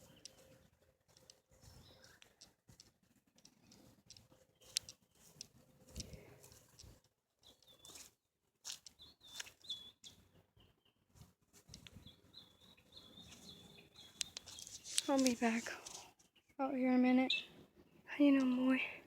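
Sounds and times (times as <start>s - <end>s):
faint clicks and rustles: 0.0s - 10.3s, 11.1s - 12.3s, 13.2s - 16.4s
faint high chirping: 8.8s - 11.1s, 11.7s - 19.0s.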